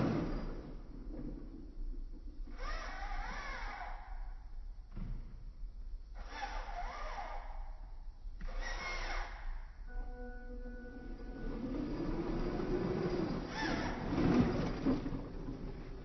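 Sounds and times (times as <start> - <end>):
toy truck electric motor whining: 2.5 - 4.3, 6.2 - 7.6, 11.4 - 15.6.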